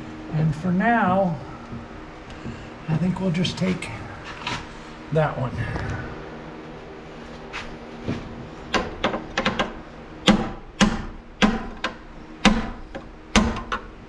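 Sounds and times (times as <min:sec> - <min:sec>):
sharp knocks on electrical box: 0:08.7 - 0:13.9.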